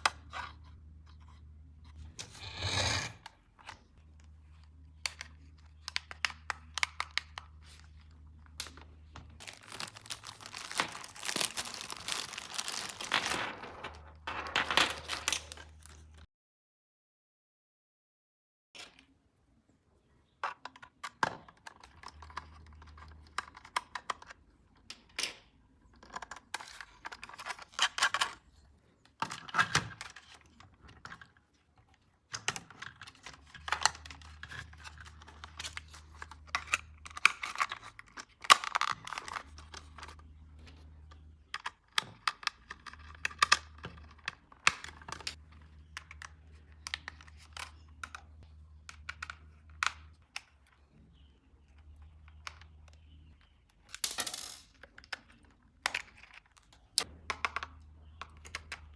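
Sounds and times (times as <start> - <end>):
hands handling plastic packaging: 4.2 - 16.2.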